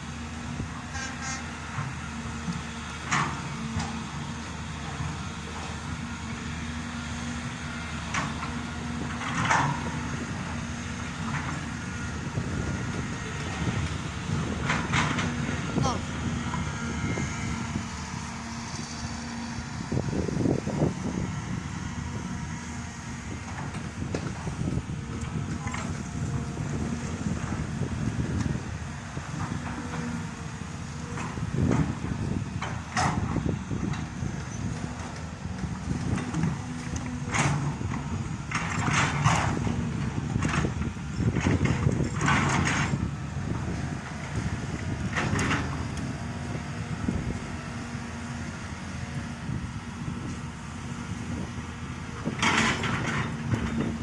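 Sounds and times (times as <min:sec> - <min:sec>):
diesel excavator engine running: 0:00.0 - 0:54.0
digging clattering and scraping: 0:29.2 - 0:46.6, 0:52.2 - 0:54.0.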